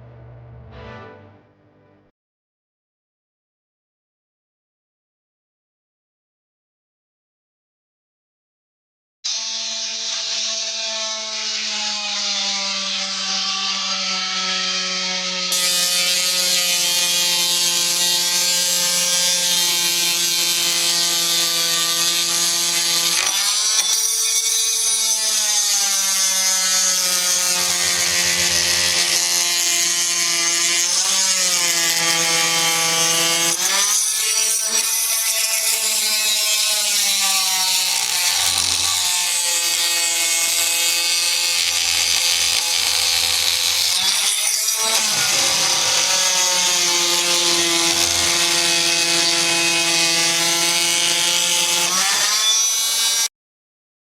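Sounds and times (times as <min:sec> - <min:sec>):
oscillating multi-tool humming: 0:09.3 - 0:52.5.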